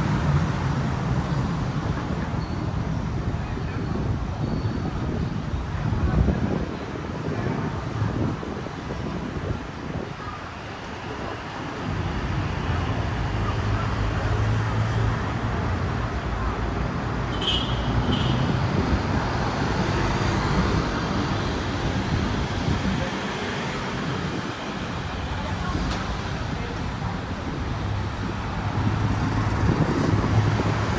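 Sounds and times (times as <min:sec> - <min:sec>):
road traffic: 0:00.0 - 0:30.9
heavy engine rumble: 0:07.3 - 0:30.9.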